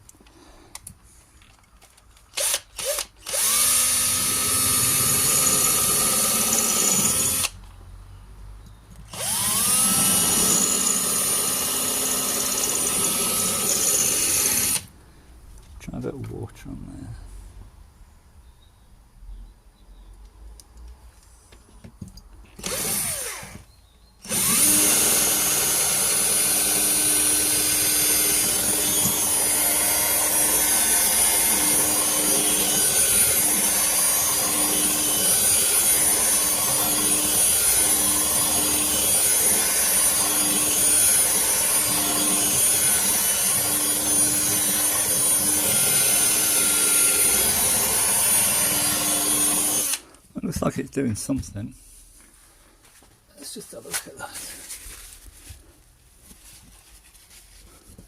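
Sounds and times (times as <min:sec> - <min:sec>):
electric drill grinding glass: 0:02.4 - 0:07.6, 0:09.1 - 0:14.9, 0:24.2 - 0:50.1.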